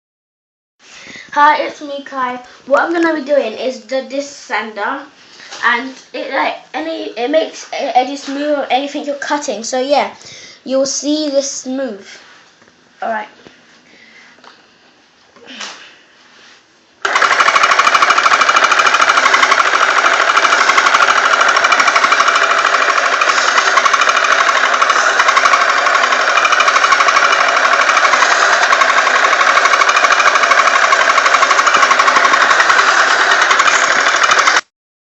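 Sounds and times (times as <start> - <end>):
toy disc sander buzzing: 17.0 - 34.7.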